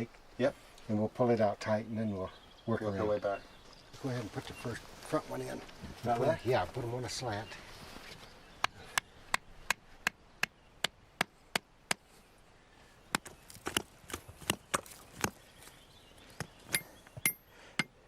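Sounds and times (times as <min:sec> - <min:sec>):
stakes hammered into ground: 0:13.1 - 0:15.4.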